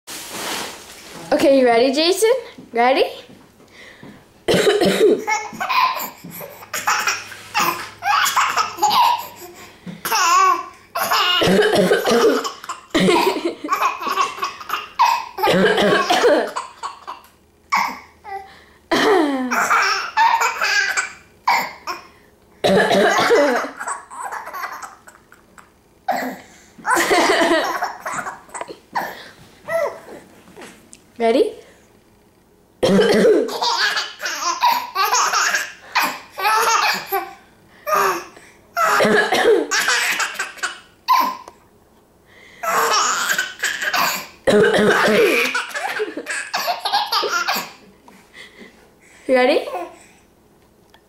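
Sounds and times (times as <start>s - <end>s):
person coughing: 4.5s - 5.3s, 11.4s - 13.5s, 15.4s - 16.6s, 18.9s - 19.7s, 22.6s - 23.8s, 32.8s - 33.6s, 38.9s - 39.9s, 44.5s - 46.2s
baby belly laughing: 5.2s - 18.0s, 19.0s - 22.0s, 23.0s - 30.0s, 33.5s - 39.0s, 39.6s - 41.5s, 42.6s - 47.8s.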